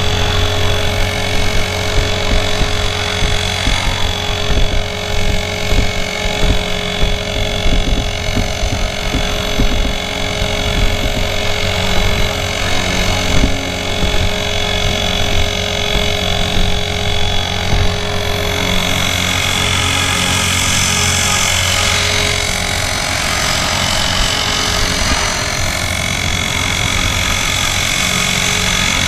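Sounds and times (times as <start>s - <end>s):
low rumble: 0.0s - 27.9s
rc helicopter rotor whine: 0.0s - 29.0s.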